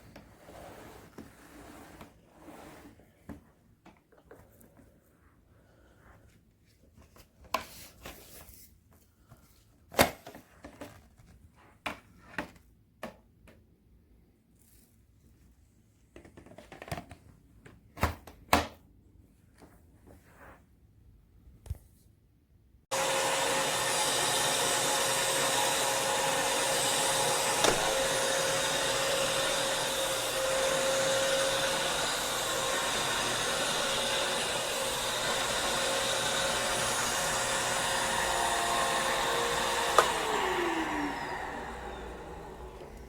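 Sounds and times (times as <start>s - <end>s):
vacuum cleaner running: 22.9s - 43.0s.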